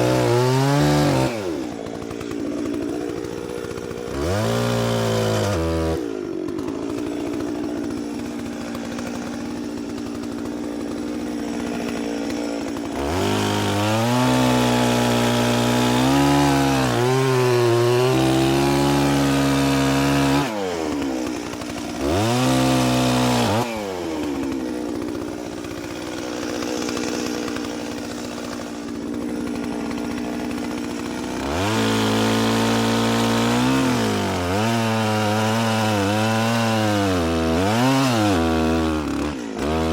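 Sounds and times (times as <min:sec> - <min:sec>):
chainsaw engine revving and idling: 0:00.0 - 0:39.9.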